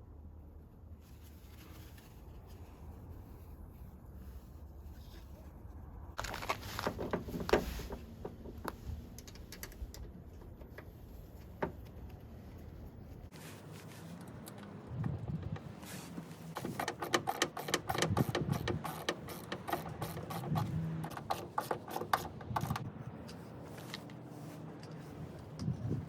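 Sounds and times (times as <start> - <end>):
sharp mechanical clicks: 16.5 - 22.9.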